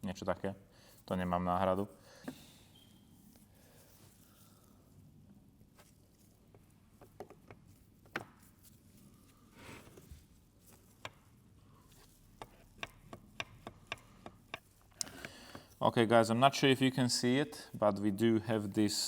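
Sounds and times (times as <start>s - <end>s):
metal parts and tools tapping: 12.4s - 15.0s.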